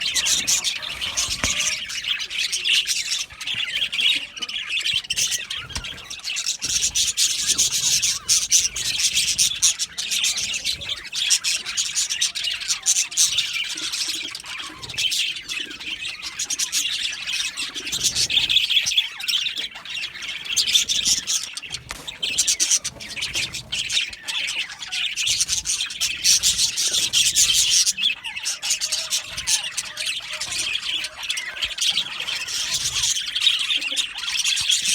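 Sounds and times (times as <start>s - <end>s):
budgerigars chattering and chirping: 0.0s - 34.9s.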